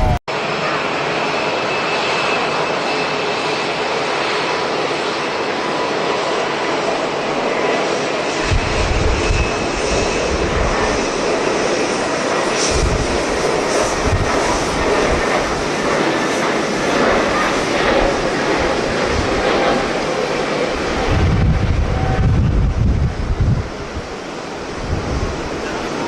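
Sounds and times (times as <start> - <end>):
wind buffeting microphone: 0.0 - 0.2, 7.4 - 26.0
jet engines with high whine: 0.0 - 26.0.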